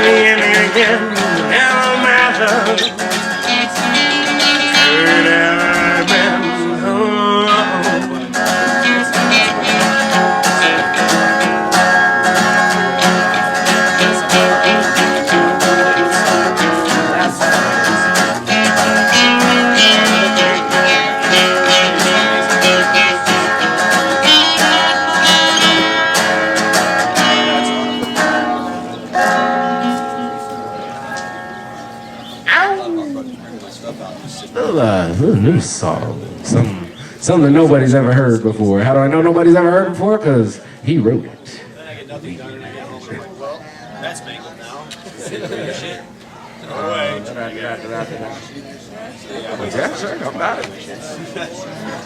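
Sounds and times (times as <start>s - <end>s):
acoustic guitar strumming: 0.0s - 38.4s, 43.6s - 52.0s.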